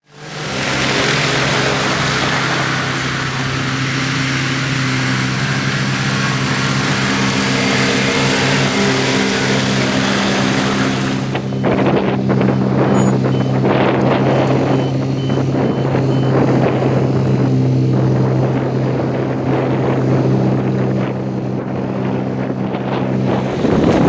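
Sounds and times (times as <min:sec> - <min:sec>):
diesel engine drone: 0:00.0 - 0:24.0
loud hiss: 0:00.1 - 0:11.6.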